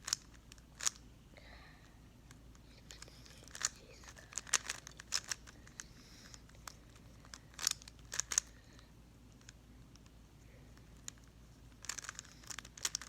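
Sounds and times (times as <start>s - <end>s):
puzzle cube clicking and clacking: 0.0s - 1.0s, 2.3s - 8.5s, 11.0s - 13.0s.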